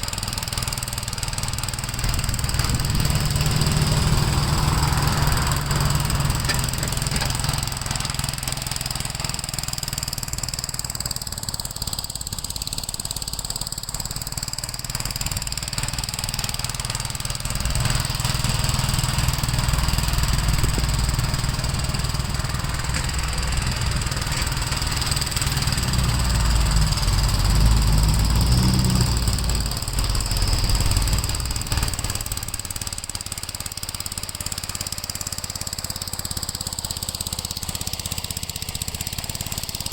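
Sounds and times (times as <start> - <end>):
single-cylinder engine running: 0.0 - 39.9.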